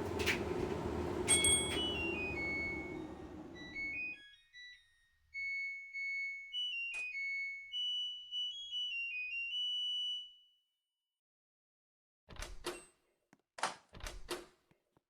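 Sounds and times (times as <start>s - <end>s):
washing machine running: 0.0s - 4.0s
washing machine beeping melody: 0.0s - 10.4s.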